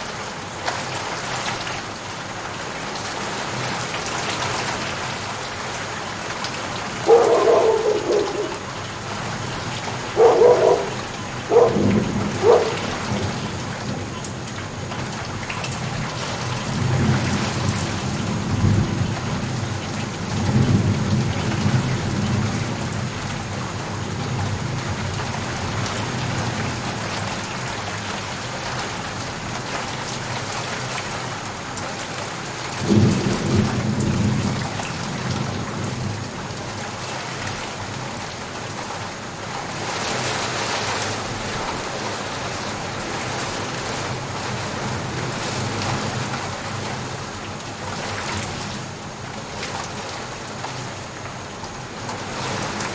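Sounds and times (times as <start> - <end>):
steady rain: 0.0 - 52.9
thunder rumbling: 6.8 - 27.8.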